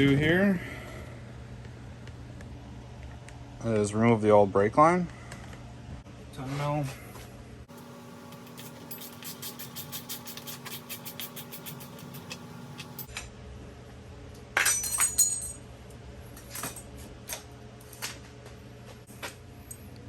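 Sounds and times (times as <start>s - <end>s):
metallic clink and rattle: 14.6s - 15.6s.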